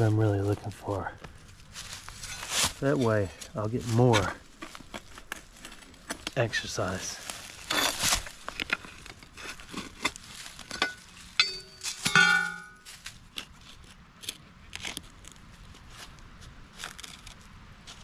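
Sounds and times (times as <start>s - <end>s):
shovel scraping soil: 1.8s - 5.2s, 7.4s - 12.1s
shovel clanging on stone: 9.7s - 12.8s.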